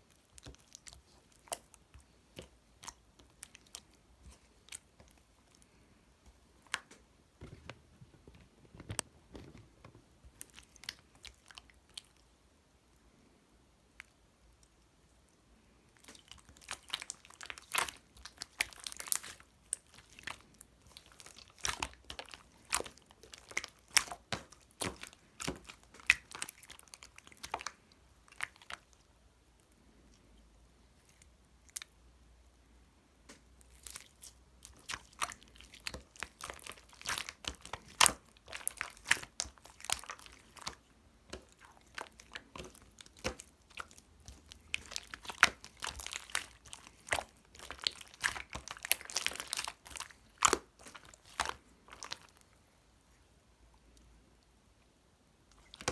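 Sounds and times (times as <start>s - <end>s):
slime squeezed by hand: 16.0s - 29.0s, 33.7s - 52.4s.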